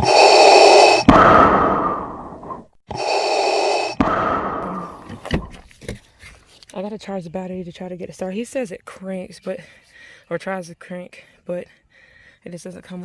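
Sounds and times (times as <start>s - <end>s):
gasp-like rush sound effect: 0.0s - 2.2s.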